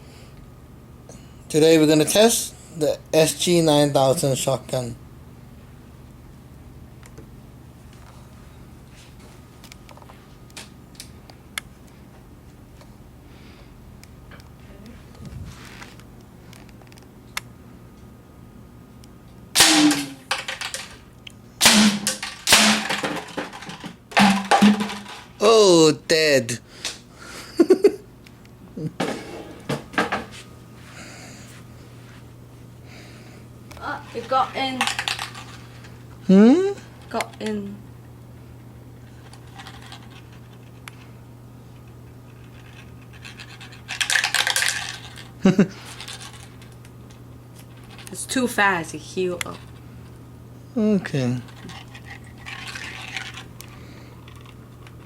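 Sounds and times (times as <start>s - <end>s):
steady low hum: 0.0s - 55.0s
faint scratching and handling: 14.9s - 16.0s
air gun shots: 19.6s - 20.3s, 21.6s - 23.2s.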